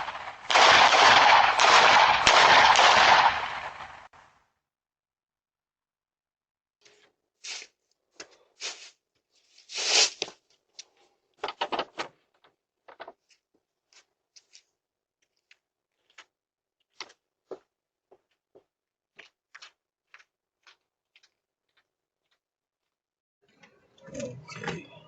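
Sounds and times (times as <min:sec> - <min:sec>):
scraping rustle: 0:08.6 - 0:10.4.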